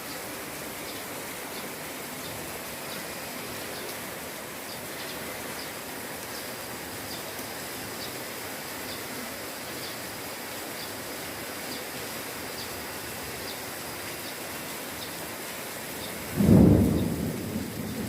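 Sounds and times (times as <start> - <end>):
light rain hissing: 0.0 - 18.0.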